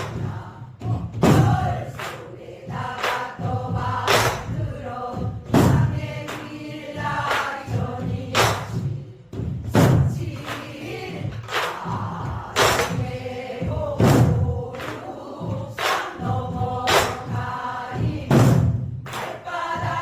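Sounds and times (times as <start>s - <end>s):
barrel drum strikes: 0.0s - 2.0s, 2.7s - 6.4s, 8.0s - 10.4s, 11.3s - 14.8s, 18.0s - 20.0s.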